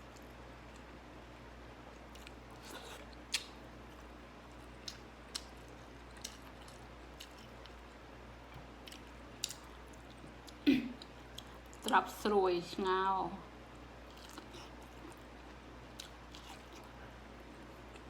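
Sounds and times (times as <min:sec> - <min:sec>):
faint low hum: 0:00.0 - 0:18.0
person chewing food: 0:01.9 - 0:11.9, 0:14.0 - 0:18.0.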